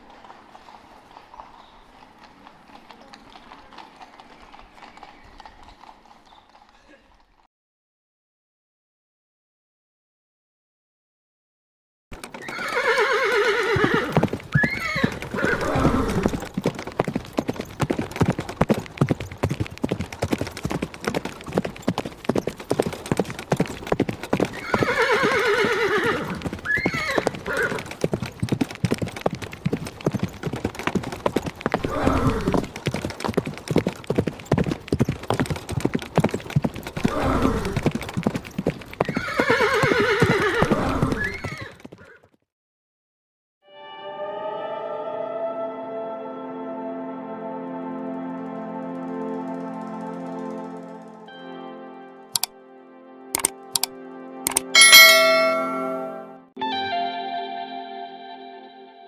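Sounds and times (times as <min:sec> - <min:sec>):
horses whinnying: 0:00.0 - 0:07.4, 0:12.2 - 0:42.3
galloping hoofbeats: 0:00.0 - 0:07.5, 0:12.2 - 0:42.3, 0:49.0 - 0:51.4, 0:53.4 - 0:53.9, 0:54.5 - 0:56.0.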